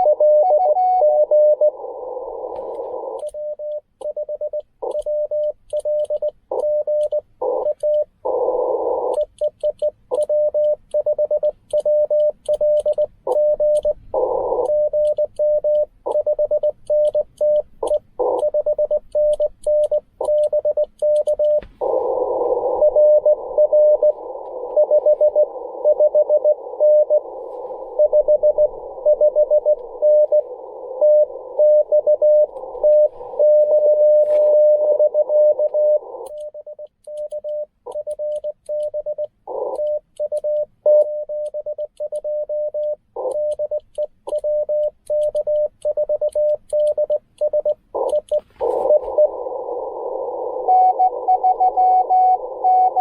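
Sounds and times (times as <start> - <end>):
morse code beeps: 0.0 - 53.0
radio hiss: 1.4 - 3.2, 7.4 - 9.3, 13.3 - 14.9, 21.4 - 36.3, 39.5 - 39.8, 48.0 - 53.0.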